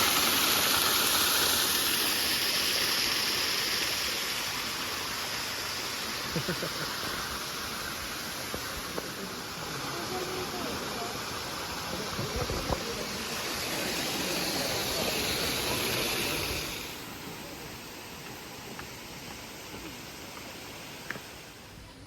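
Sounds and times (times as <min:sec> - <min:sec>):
flowing water rushing: 0:00.0 - 0:22.0
faint voices: 0:08.1 - 0:22.0.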